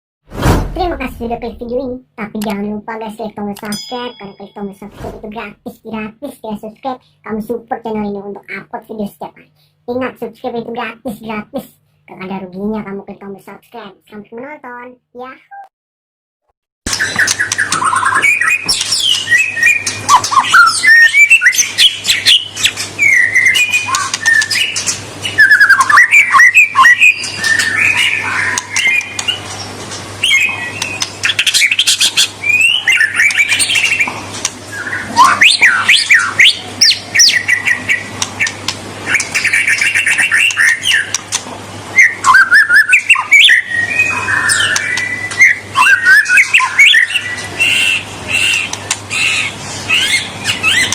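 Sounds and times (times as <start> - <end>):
bird singing whistles and chatters: 16.9 - 29.4, 30.2 - 34.1, 34.7 - 41.2, 42.0 - 50.9.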